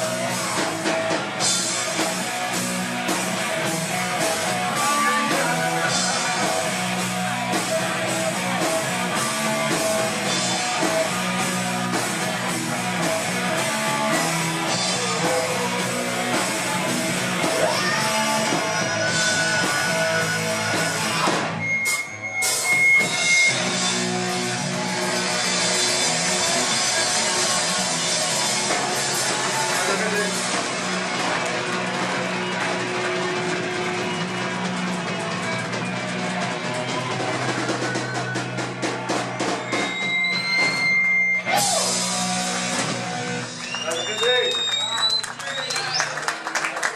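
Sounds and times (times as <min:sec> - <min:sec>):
distorted electric guitars: 0:00.0 - 0:46.0
hard rock band playing: 0:00.0 - 0:46.0
drum kit: 0:00.0 - 0:46.9
high whistling tone: 0:21.6 - 0:23.6, 0:39.4 - 0:41.9, 0:43.6 - 0:46.2.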